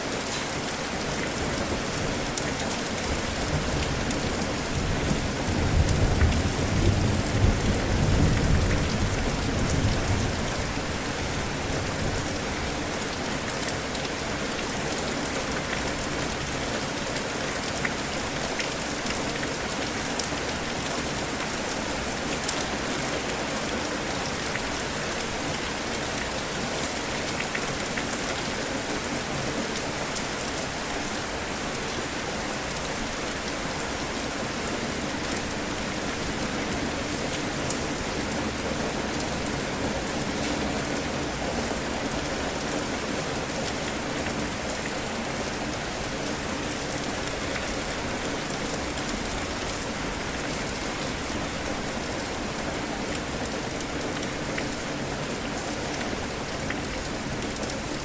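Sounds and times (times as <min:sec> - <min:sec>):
steady rain falling: 0:00.0 - 0:58.0
low rumble of thunder: 0:04.8 - 0:10.8.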